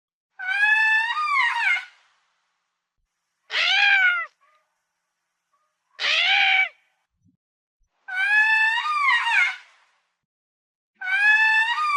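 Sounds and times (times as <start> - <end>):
lemur high-pitched cries: 0.4 - 2.0, 3.5 - 4.6, 6.0 - 6.8, 8.1 - 9.7, 11.0 - 11.9.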